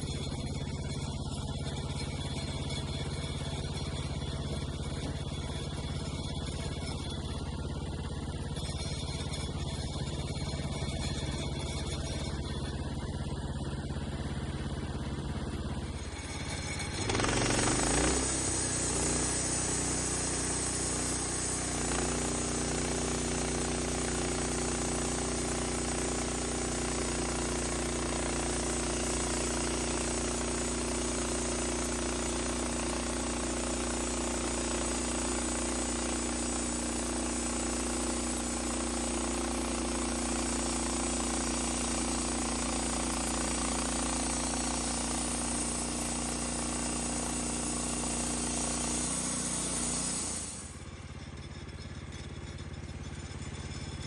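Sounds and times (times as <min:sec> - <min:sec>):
saw engine running: 0:00.0 - 0:54.0
saw blade hissing through wood: 0:16.1 - 0:27.8, 0:28.4 - 0:50.8.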